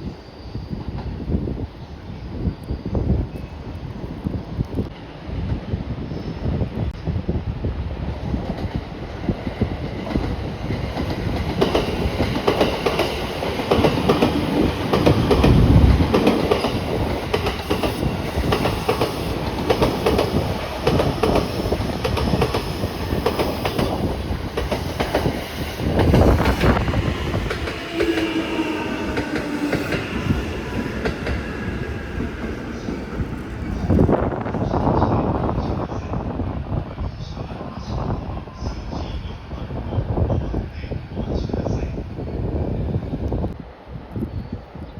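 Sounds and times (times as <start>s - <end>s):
train wheels clattering: 9.9s - 34.2s.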